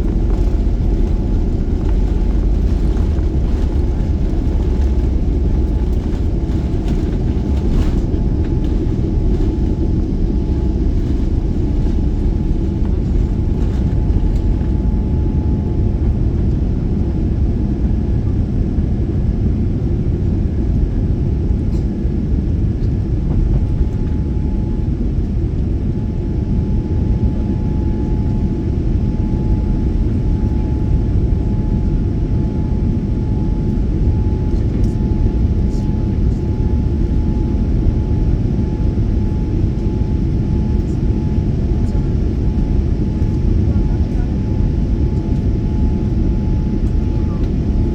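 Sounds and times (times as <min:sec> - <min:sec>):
engines and rushing air rumble: 0:00.0 - 0:28.3.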